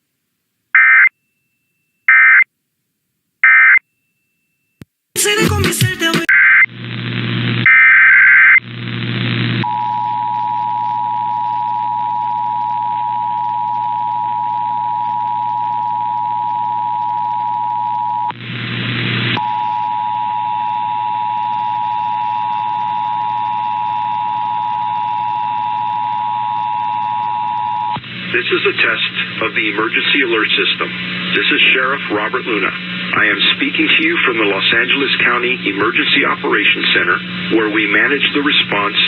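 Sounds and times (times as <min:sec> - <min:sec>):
radio hiss: 0:28.0 - 0:39.0.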